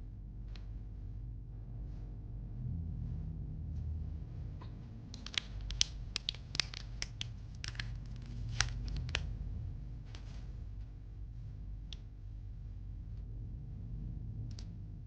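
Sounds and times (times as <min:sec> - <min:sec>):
snack packaging crackling: 0:05.2 - 0:09.3.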